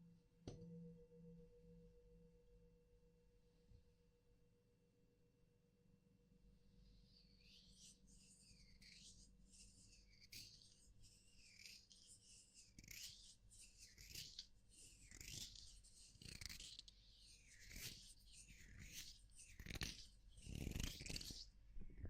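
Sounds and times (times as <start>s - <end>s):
soft scratchy rubbing strokes: 6.8s - 21.6s.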